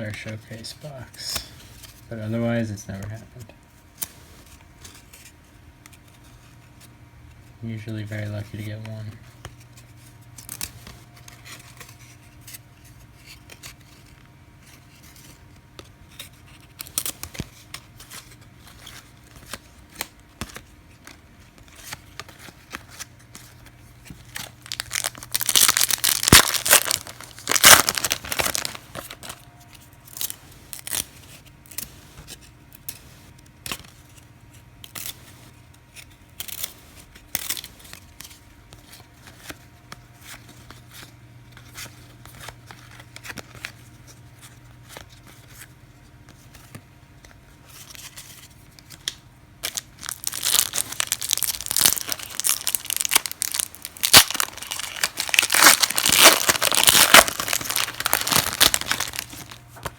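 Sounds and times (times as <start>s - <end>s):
cards clicking and rustling: 8.4s - 34.2s, 35.8s - 59.9s
card pack wrapper tearing: 24.1s - 29.4s, 30.0s - 31.0s, 48.9s - 59.9s.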